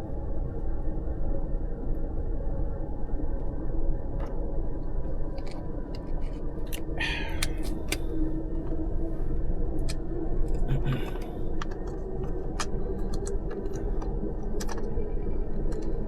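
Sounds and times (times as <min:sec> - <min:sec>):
train low rumble: 0:00.0 - 0:16.0.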